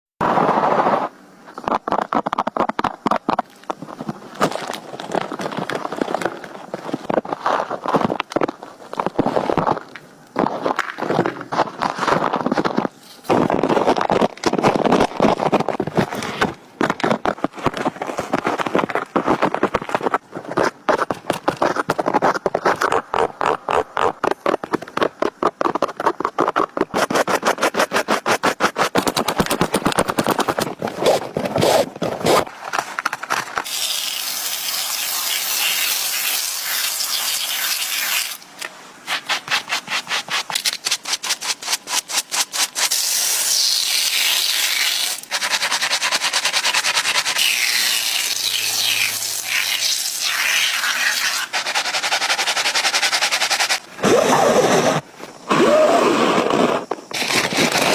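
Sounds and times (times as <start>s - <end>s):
rapid rubbing strokes: 21.3s - 32.5s, 39.0s - 57.9s
hissing sanding: 39.0s - 53.9s.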